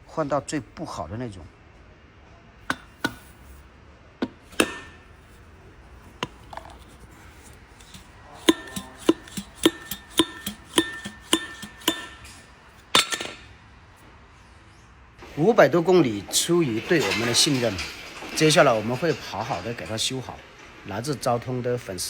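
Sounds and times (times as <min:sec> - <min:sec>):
hammer striking steel: 0:02.7 - 0:03.6, 0:04.2 - 0:13.6
metal clatter: 0:02.7 - 0:03.6, 0:04.2 - 0:13.6
metal tools clanking: 0:02.7 - 0:03.6, 0:04.2 - 0:13.6, 0:16.3 - 0:20.3.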